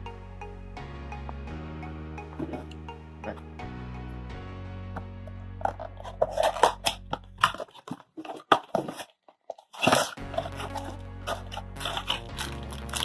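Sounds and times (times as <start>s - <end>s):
background music: 0.0s - 7.7s, 10.2s - 13.0s
wrapper crinkling and tearing: 5.7s - 13.0s.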